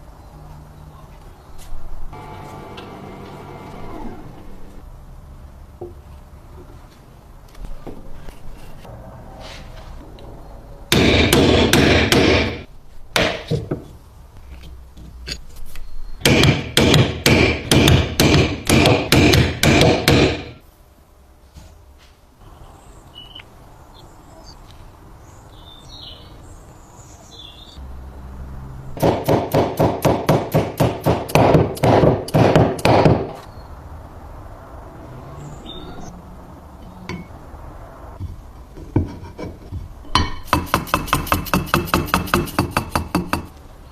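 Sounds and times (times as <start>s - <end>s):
rapid hammer blows: 10.9s - 12.6s, 29.0s - 33.3s.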